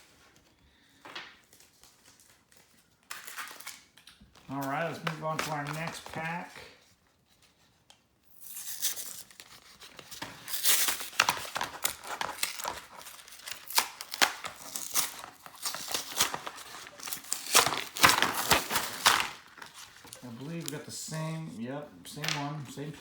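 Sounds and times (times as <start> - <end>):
card packaging being torn open: 2.1 - 6.4, 8.3 - 21.0.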